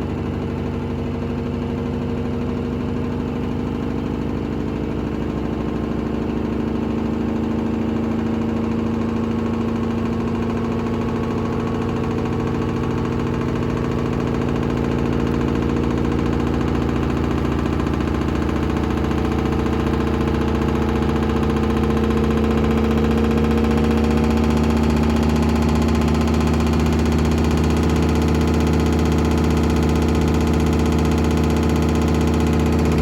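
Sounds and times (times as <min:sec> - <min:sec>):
washing machine spinning: 0:19.0 - 0:33.0.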